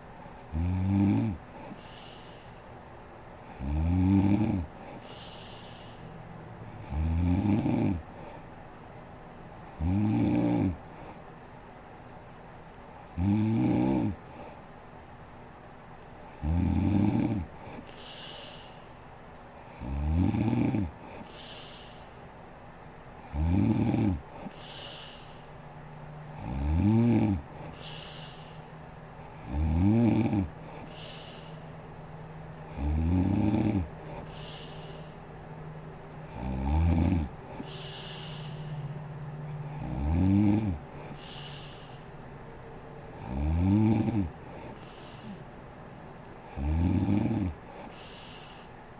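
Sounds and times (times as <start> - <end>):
soft airy breaths: 0.0 - 13.2, 13.8 - 48.9
woman snoring: 0.5 - 2.7, 3.6 - 8.4, 9.7 - 10.8, 13.1 - 14.2, 16.4 - 18.8, 19.8 - 22.1, 23.3 - 31.8, 32.6 - 35.4, 36.2 - 42.2, 43.2 - 45.5, 46.5 - 48.8.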